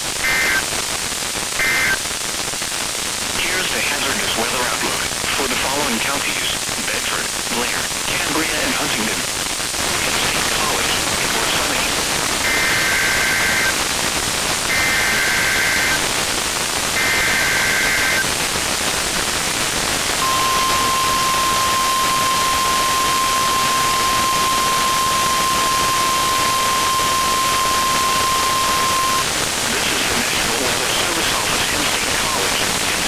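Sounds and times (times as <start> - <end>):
radio hiss: 0.0 - 33.0
digital data bursts: 0.2 - 0.7, 1.6 - 2.1, 3.4 - 13.8, 14.6 - 16.2, 16.9 - 18.4, 20.2 - 33.0
steady warning alarm tone: 12.4 - 13.7, 14.7 - 16.0, 17.0 - 18.2, 20.2 - 29.3.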